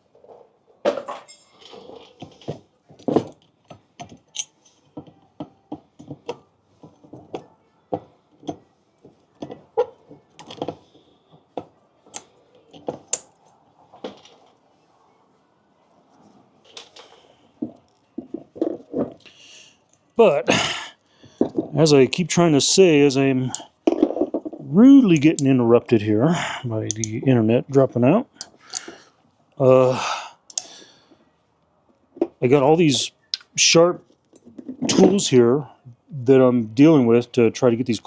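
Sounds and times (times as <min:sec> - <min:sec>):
metal tools clinking and knocking: 0:00.8 - 0:14.6.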